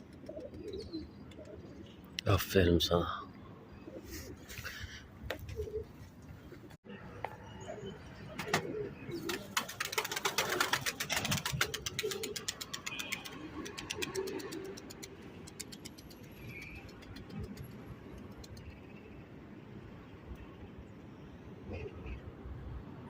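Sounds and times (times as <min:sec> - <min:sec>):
pigeons cooing: 0:00.1 - 0:01.9, 0:03.8 - 0:06.0, 0:07.7 - 0:15.8.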